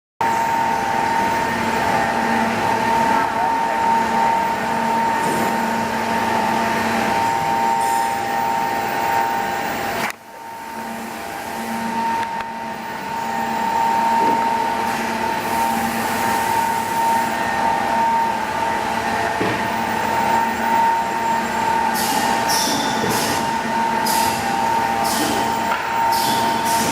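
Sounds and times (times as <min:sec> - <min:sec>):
machine humming with whine: 0:00.2 - 0:26.9.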